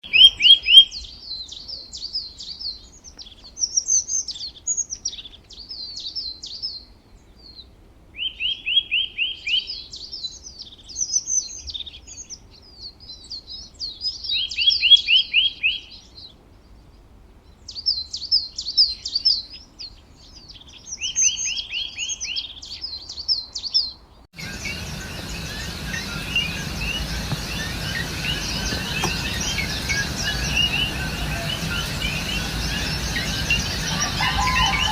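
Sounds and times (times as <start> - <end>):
songbird trilling song: 0.0 - 16.3, 17.5 - 34.9
chorus of many birds: 19.8 - 34.9
background hiss: 24.3 - 34.9.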